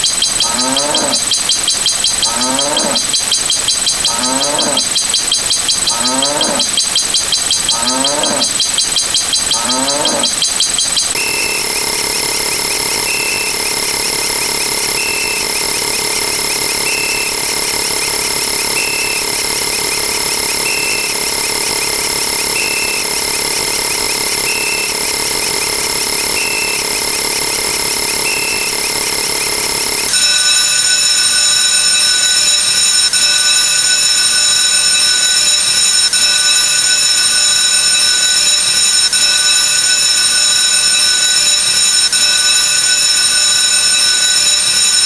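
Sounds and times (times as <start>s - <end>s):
sustained electronic tones: 0.0s - 13.7s, 27.9s - 45.0s
short high electronic beep: 28.2s - 28.8s, 30.1s - 45.0s.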